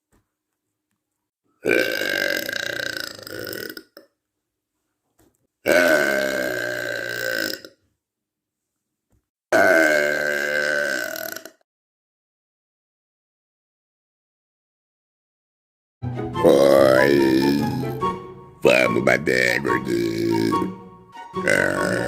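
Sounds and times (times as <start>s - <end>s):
woman burping loudly: 1.6s - 4.0s, 5.7s - 7.8s, 9.5s - 11.6s, 16.4s - 18.0s, 19.9s - 20.7s, 21.4s - 22.0s.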